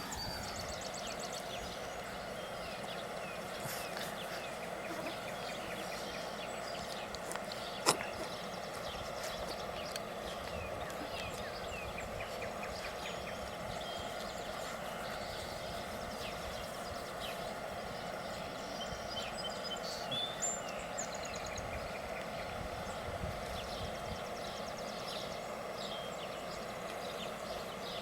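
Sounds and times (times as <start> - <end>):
steady outdoor hum: 0.0 - 28.0.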